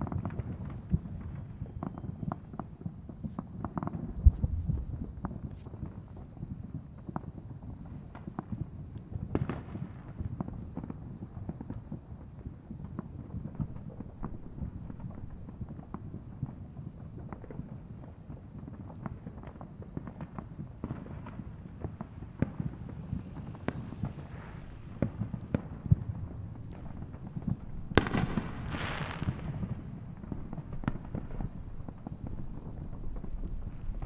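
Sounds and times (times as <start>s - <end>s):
fireworks pops and bangs: 0.0s - 34.0s
loud crackling burst: 23.2s - 30.0s.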